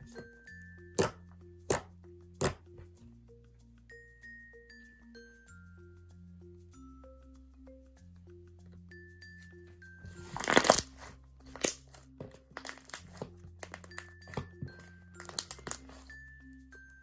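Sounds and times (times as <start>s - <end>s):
light background music: 0.0s - 17.0s
slime bubble pops and crackles: 1.0s - 2.6s, 10.3s - 14.0s, 15.2s - 15.9s.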